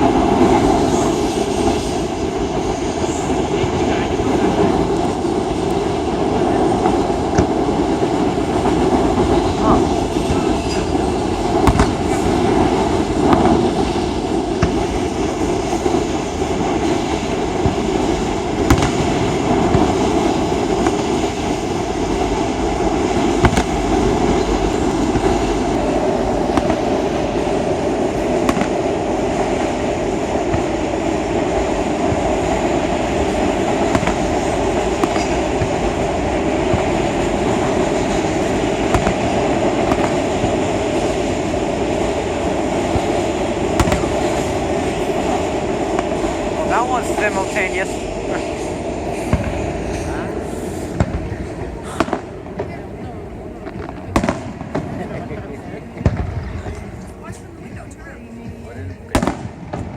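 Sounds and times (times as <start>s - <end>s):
freight train wheels on rails: 0.0s - 59.9s
sharp cracks: 18.6s - 19.9s.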